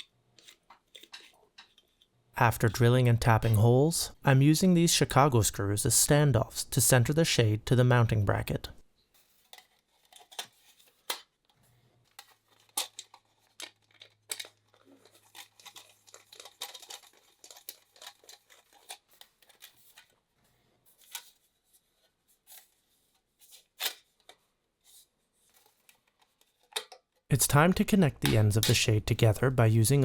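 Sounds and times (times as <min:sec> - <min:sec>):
metal parts clicking and tapping: 0:12.2 - 0:19.7.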